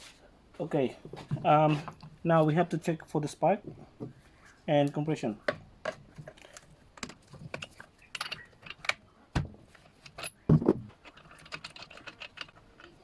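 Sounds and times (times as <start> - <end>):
hand tools and metal parts clinking: 5.8 - 9.0, 9.7 - 13.0.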